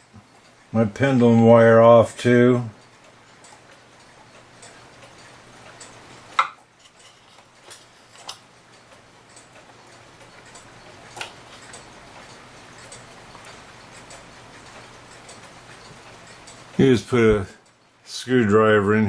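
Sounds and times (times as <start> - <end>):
mechanical clock ticking: 0.0 - 19.0
clock parts knocking and clicking: 5.7 - 8.5.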